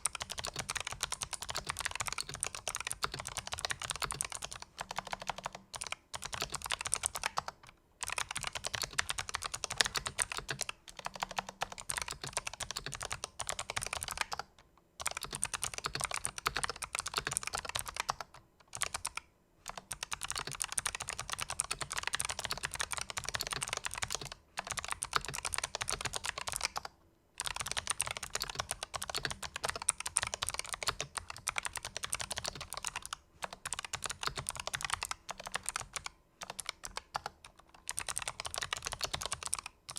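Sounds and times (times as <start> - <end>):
clicky keyboard typing: 0.0 - 39.9.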